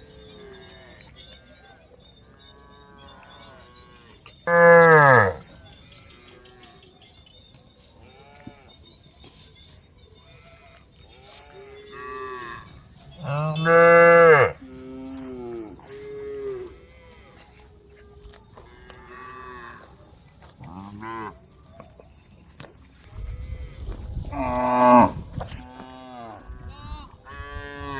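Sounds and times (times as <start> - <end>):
cows mooing: 3.6 - 5.4, 11.8 - 16.8, 24.3 - 26.6.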